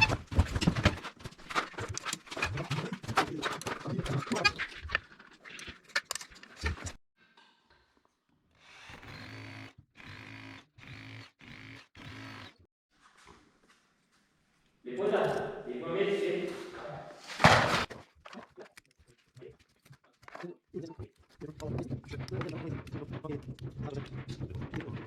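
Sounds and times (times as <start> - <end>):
power tool motor bursts: 8.6 - 12.6.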